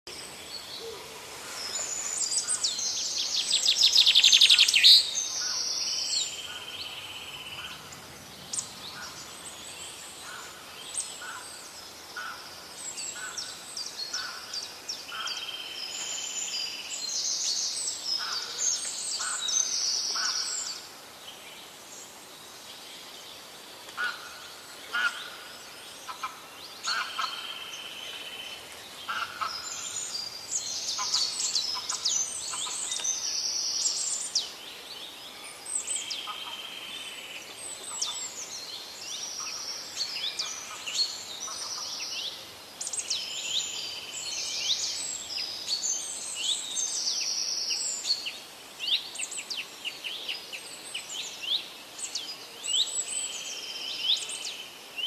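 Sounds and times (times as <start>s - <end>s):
songbirds singing and calling: 0.0s - 55.0s
faint steady hiss: 0.1s - 55.0s.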